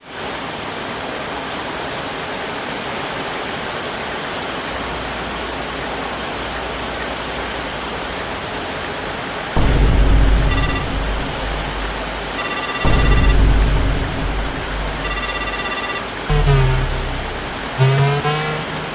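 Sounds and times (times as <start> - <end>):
heavy rain: 0.1 - 18.9
bright ringing tones: 9.6 - 18.9
music with deep bass: 9.6 - 18.9.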